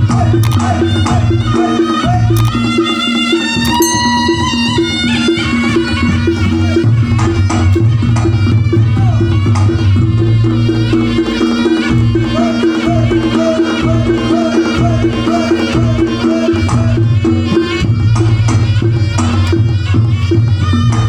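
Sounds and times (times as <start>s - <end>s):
gamelan ensemble playing: 1.8s - 8.1s
hand drum strokes: 3.7s - 8.3s.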